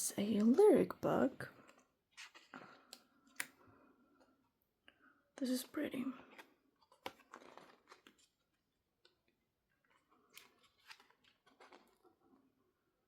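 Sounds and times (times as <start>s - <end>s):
faint paper rustling: 1.5s - 4.4s, 5.4s - 12.6s.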